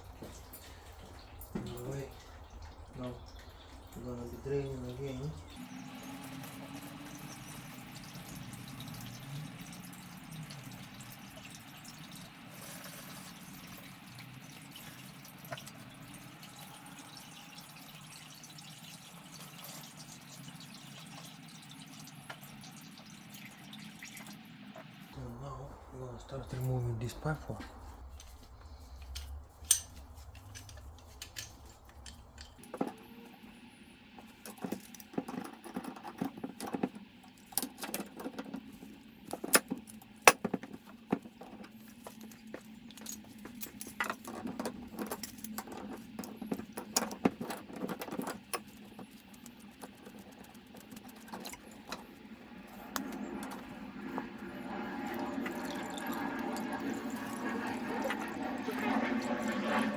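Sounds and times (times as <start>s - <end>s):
spanner clinking on metal fittings: 29.0s - 33.0s, 34.2s - 53.8s.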